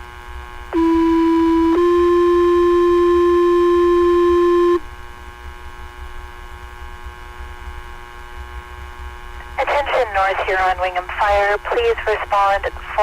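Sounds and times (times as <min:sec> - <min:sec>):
fire paging tone over radio: 0:00.8 - 0:04.8, 0:09.4 - 0:13.0
radio channel hum and hiss: 0:07.8 - 0:13.0.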